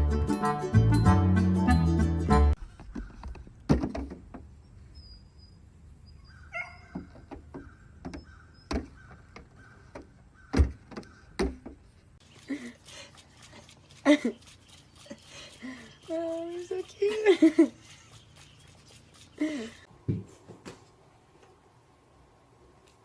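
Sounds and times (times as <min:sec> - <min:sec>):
dull thumps and knocks: 0:02.7 - 0:04.6, 0:06.9 - 0:12.0
dog yipping: 0:06.1 - 0:07.1.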